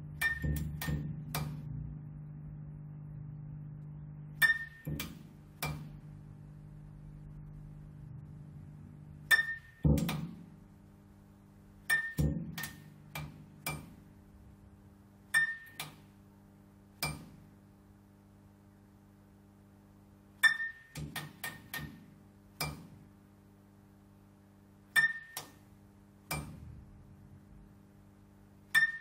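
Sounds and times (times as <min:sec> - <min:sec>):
low electrical hum: 0:00.0 - 0:29.0
neon tube clicking: 0:00.2 - 0:01.6.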